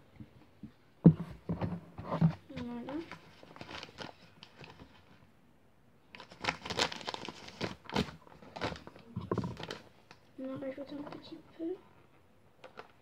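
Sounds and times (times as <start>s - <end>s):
packet crinkling and rustling: 2.5s - 5.2s, 6.1s - 11.4s, 12.6s - 13.0s.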